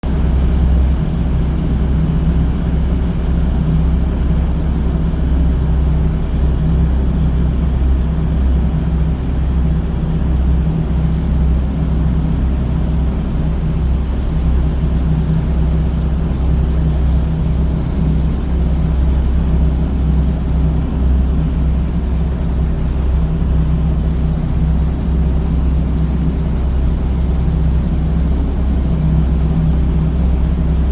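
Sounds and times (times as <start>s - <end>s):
boat engine droning: 0.1s - 30.9s.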